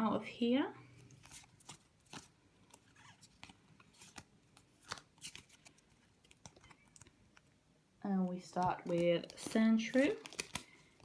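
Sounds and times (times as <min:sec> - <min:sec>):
foil pack crinkling: 0:08.5 - 0:11.0.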